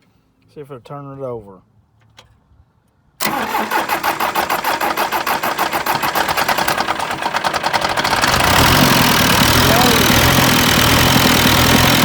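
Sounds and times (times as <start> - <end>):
tractor engine cranking: 3.2 - 12.0.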